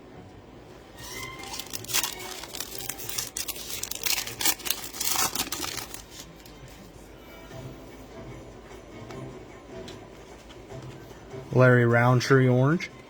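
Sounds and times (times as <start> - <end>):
plastic wrapping torn and crinkled: 1.0 - 6.6.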